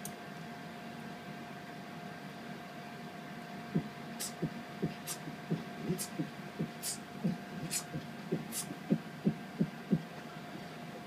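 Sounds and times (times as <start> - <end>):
steady electrical hum: 0.0 - 11.0
muffled dance music beat: 3.8 - 10.1
short hiss: 4.2 - 4.4, 5.0 - 5.2, 6.0 - 6.2, 6.8 - 7.0, 7.7 - 7.9, 8.5 - 8.7.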